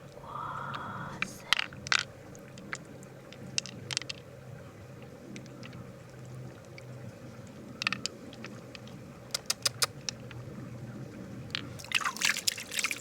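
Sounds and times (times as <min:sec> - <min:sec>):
small hard objects clicking together: 0:01.2 - 0:04.2, 0:07.8 - 0:10.3.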